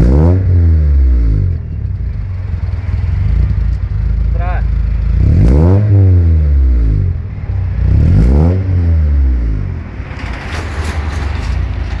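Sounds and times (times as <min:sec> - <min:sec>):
engine revving: 0:00.0 - 0:01.6, 0:02.2 - 0:12.0
engine idling with clattering: 0:01.6 - 0:05.4, 0:09.8 - 0:12.0.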